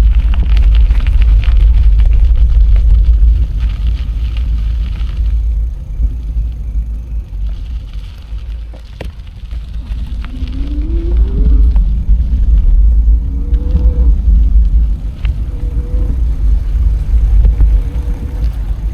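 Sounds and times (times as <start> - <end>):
wind buffeting microphone: 0.0 - 18.9
faint rising tone: 10.2 - 18.9.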